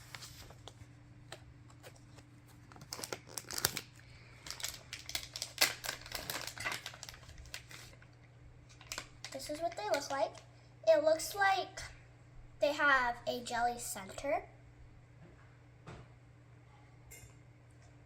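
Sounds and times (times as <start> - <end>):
plastic wrapper crinkling: 1.7 - 10.5.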